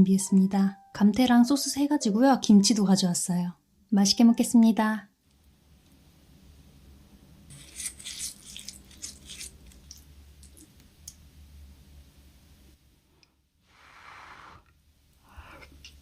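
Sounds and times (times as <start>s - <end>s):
food and utensils crackling: 7.5s - 11.3s.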